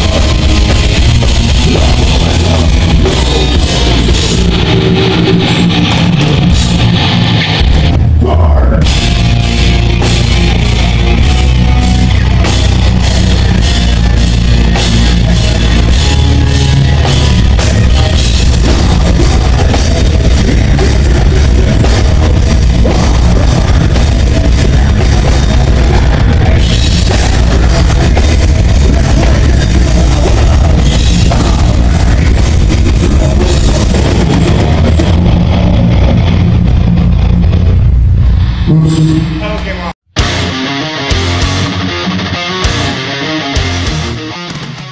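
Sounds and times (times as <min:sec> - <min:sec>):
heavy metal band playing: 0:00.0 - 0:44.9
rapid drum hits: 0:08.8 - 0:35.5.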